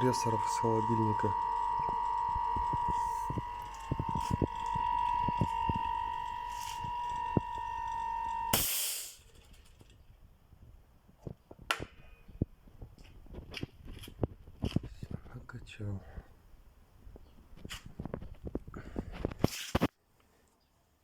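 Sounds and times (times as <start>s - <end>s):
compressor humming: 0.0s - 8.8s
burst of hiss: 8.5s - 9.2s.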